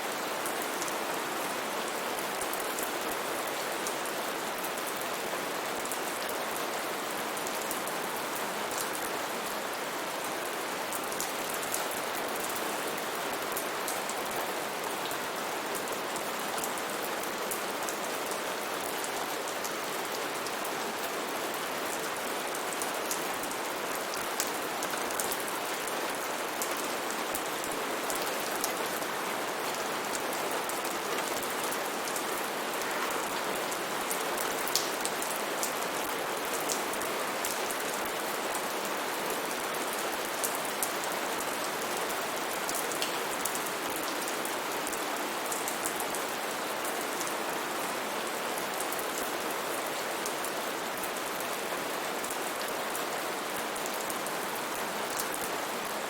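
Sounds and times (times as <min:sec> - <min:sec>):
steady rain falling: 0:00.0 - 0:56.0.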